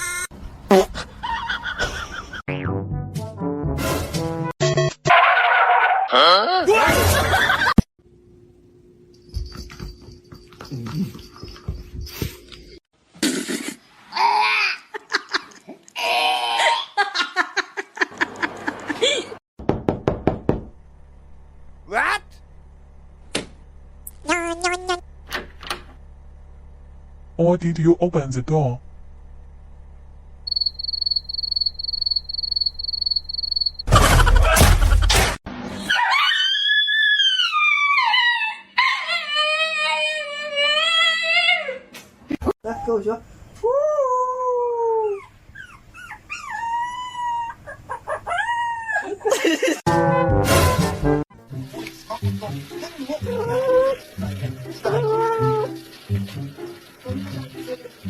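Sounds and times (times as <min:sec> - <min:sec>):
people laughing hard: 0:01.1 - 0:02.4, 0:06.8 - 0:07.8, 0:49.1 - 0:49.8
dog howling: 0:35.9 - 0:41.8, 0:53.2 - 0:54.1, 0:54.8 - 0:55.8.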